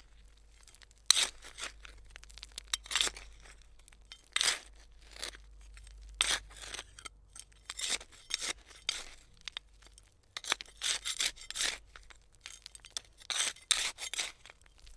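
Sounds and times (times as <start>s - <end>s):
trowel scraping soil: 0.6s - 2.0s, 2.8s - 5.5s, 6.2s - 9.2s, 10.4s - 14.9s.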